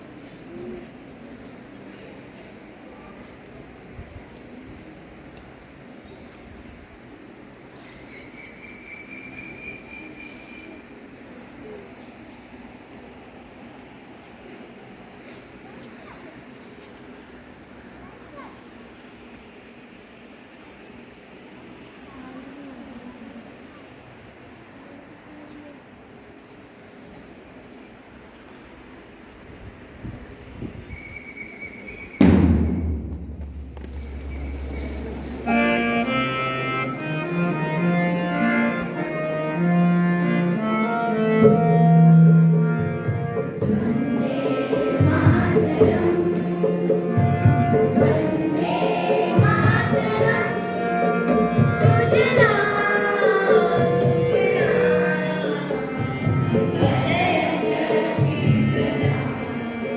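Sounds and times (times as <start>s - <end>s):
loud thump with low rumble: 32.2s - 35.1s
drum beats: 32.2s - 35.8s, 41.5s - 59.8s
instrumental melody: 35.0s - 59.8s.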